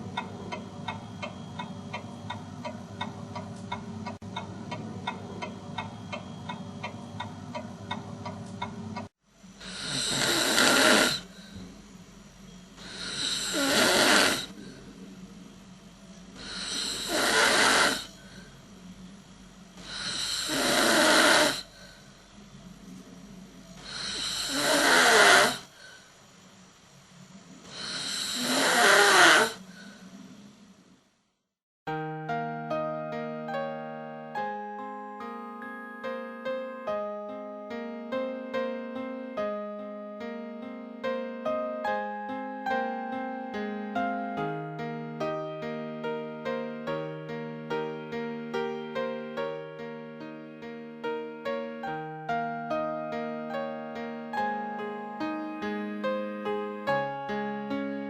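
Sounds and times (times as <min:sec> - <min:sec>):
steady ticking: 0:00.0 - 0:09.1
person snoring loudly: 0:09.6 - 0:11.3, 0:12.8 - 0:14.6, 0:16.4 - 0:18.2, 0:19.8 - 0:21.7, 0:23.8 - 0:25.7, 0:27.7 - 0:29.7.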